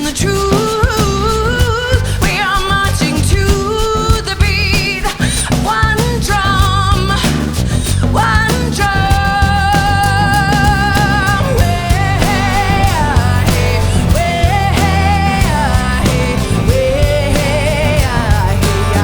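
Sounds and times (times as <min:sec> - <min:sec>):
person singing with vibrato: 0:00.0 - 0:19.0
rock band playing: 0:09.7 - 0:19.0.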